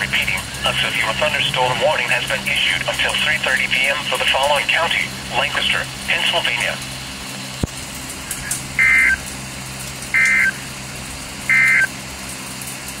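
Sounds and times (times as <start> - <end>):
low steady hum: 0.0 - 13.0
high-pitched digital data tone bursts: 8.8 - 9.2, 10.2 - 10.6, 11.5 - 11.9.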